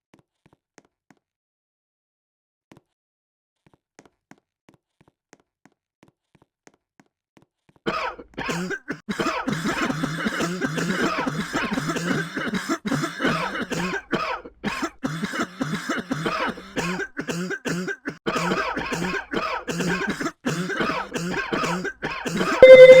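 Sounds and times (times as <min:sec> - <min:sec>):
person coughing: 0:07.9 - 0:23.0.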